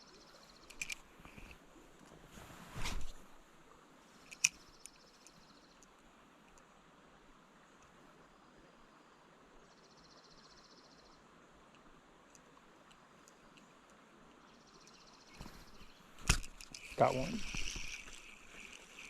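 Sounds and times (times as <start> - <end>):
rustling: 0.7 - 3.5, 15.3 - 19.0
creek hiss: 2.8 - 19.0.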